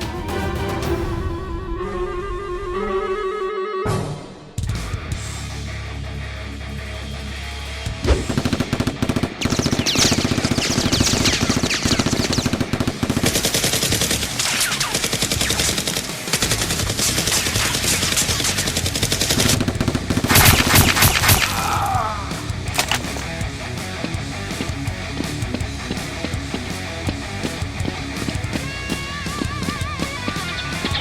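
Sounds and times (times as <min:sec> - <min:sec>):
rapid automatic gunfire: 0:08.1 - 0:21.7.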